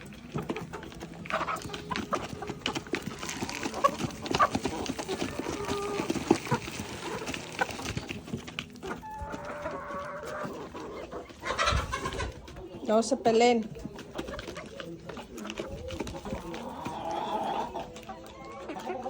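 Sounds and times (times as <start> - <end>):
farm animals calling: 0.0 - 19.0.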